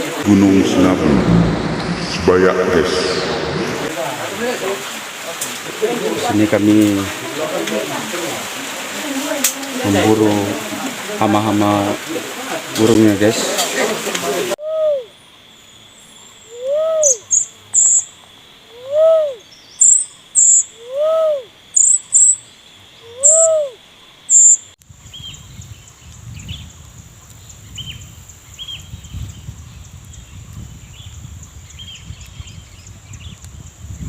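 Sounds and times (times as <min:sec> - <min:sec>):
low hooting bird call: 0:14.6 - 0:15.3, 0:16.1 - 0:18.1, 0:18.7 - 0:22.4, 0:23.0 - 0:24.6
high insect drone: 0:14.6 - 0:28.7.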